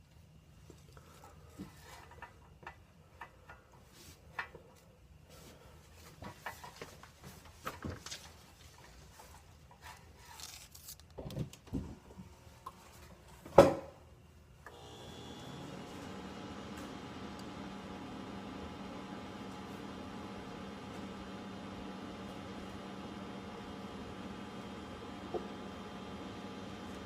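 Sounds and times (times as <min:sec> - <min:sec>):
handling knocks and rustles: 0:03.4 - 0:12.0.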